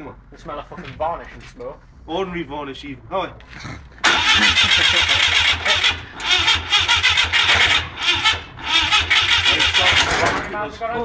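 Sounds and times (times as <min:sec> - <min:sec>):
engine cranking on starter motor: 0:04.0 - 0:10.6.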